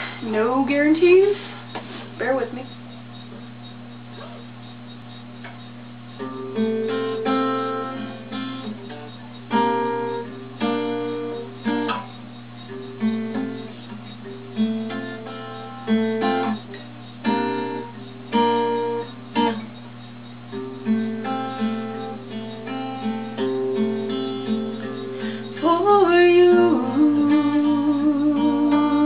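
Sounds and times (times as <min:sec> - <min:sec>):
acoustic guitar strumming: 0:00.0 - 0:29.0
faint steady hum: 0:00.0 - 0:29.0.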